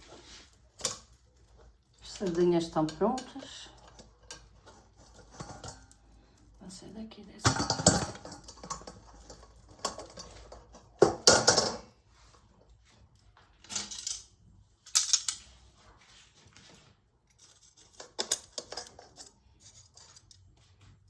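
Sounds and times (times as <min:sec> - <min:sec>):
metal scraping and clinking: 0:00.0 - 0:06.5, 0:07.4 - 0:12.0, 0:13.6 - 0:15.6, 0:17.2 - 0:20.9.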